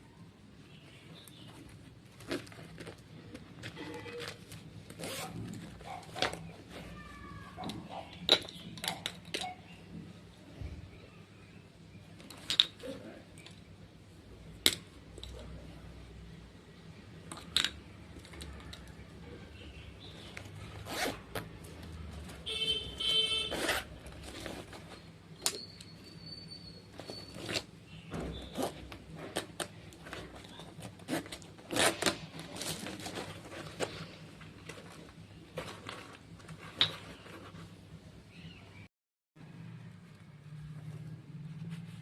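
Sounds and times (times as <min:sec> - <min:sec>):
parcel packaging rustling: 0:01.2 - 0:07.6, 0:20.0 - 0:26.0, 0:26.8 - 0:37.8
packaging ripping: 0:28.5 - 0:34.1.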